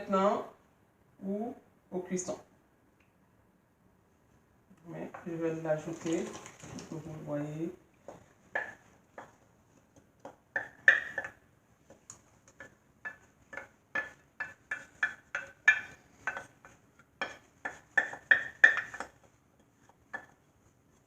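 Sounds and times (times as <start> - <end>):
spoon scraping a bowl: 12.5 - 21.0.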